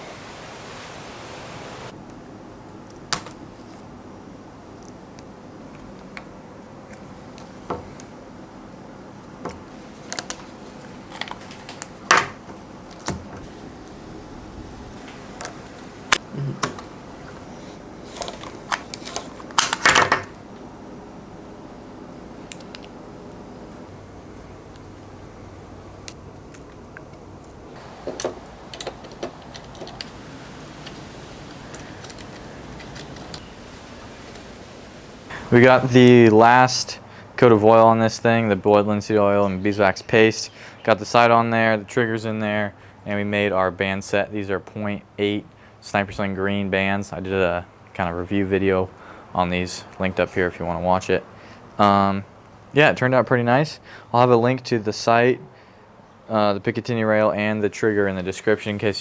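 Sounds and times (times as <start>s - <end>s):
room noise: 0.0s - 2.0s, 9.7s - 37.9s
light clicks and knocks: 26.0s - 34.5s
objects clicking and knocking: 27.7s - 30.2s.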